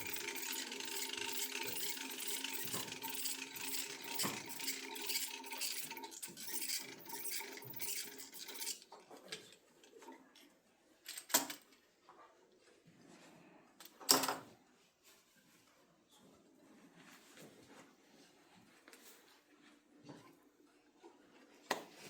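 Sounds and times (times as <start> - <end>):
geared mechanism whirring: 0.0 - 8.8.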